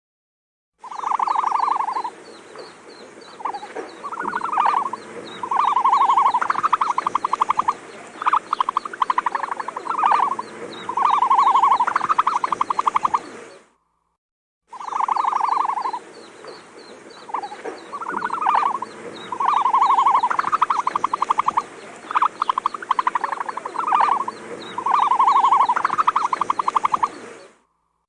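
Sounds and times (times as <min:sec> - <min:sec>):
faint fast high ticking: 0:00.8 - 0:13.3, 0:14.7 - 0:27.6
animal croaking trills: 0:03.3 - 0:13.2, 0:14.7 - 0:27.2.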